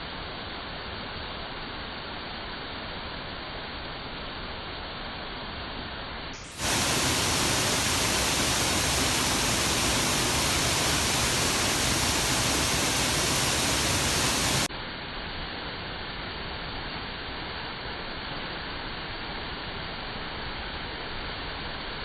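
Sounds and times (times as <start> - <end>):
waterfall rushing: 6.5 - 14.7.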